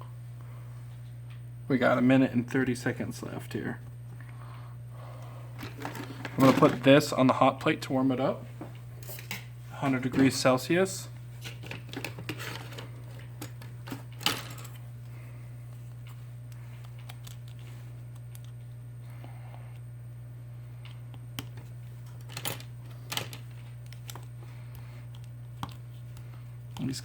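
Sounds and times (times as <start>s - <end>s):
steady low hum: 0.0s - 27.0s
clicks and taps handling phone parts: 25.1s - 25.8s.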